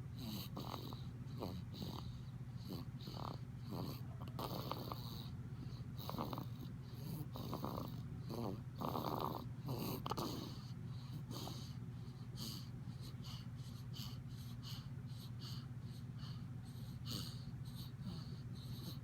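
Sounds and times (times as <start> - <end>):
baby snoring with congested breaths: 0.0 - 19.0.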